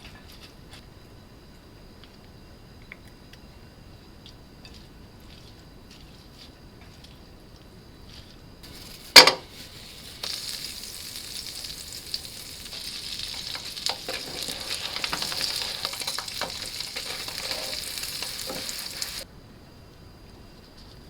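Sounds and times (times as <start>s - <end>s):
stirring clicks: 8.6s - 19.2s
food sizzling in a pan: 8.6s - 19.3s.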